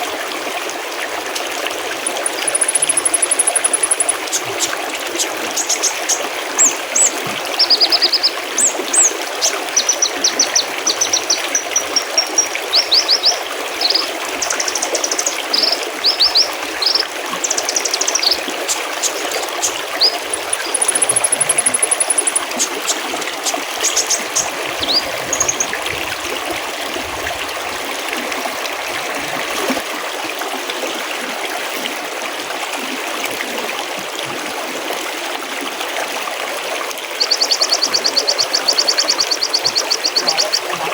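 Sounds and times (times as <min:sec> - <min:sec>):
stream trickling and burbling: 0:00.0 - 0:40.9
small birds chirping and trilling: 0:02.0 - 0:25.8, 0:37.2 - 0:40.9.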